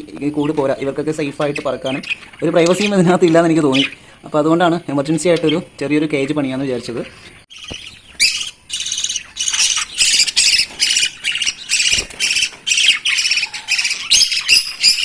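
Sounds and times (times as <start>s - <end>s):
lovebirds squawking: 0.0s - 15.0s.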